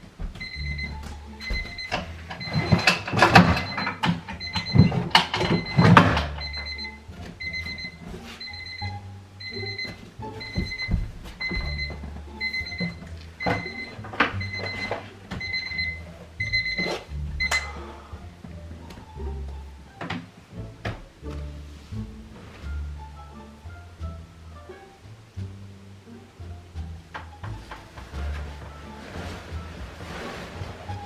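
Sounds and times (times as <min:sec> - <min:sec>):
alarm clock beeping: 0:00.4 - 0:17.9.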